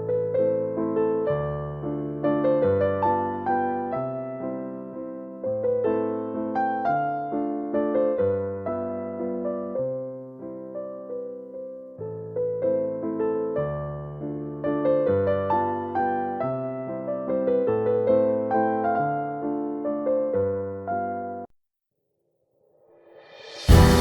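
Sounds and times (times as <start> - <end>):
piano music: 0.0 - 21.5, 23.6 - 24.0.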